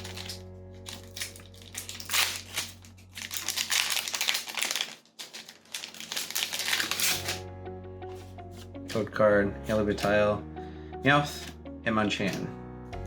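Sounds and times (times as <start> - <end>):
foil wrapper crinkling and tearing: 0.0 - 7.4.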